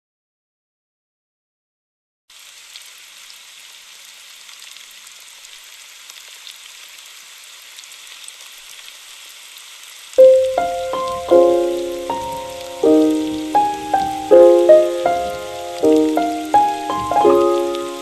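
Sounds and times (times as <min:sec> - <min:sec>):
rain hissing: 0:02.3 - 0:18.0
faint crackles: 0:02.4 - 0:18.0
background music: 0:10.2 - 0:18.0
piano note: 0:10.2 - 0:18.0.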